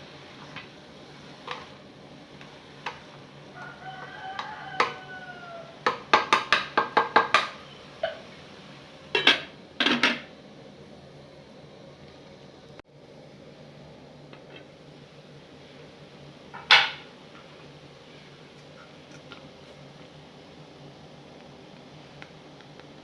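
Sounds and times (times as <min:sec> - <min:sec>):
rooster crowing: 0:03.5 - 0:06.1.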